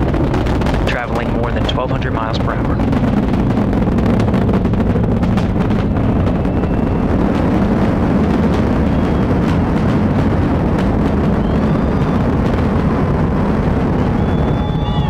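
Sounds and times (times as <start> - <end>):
rocket engines rumbling: 0.0 - 15.0.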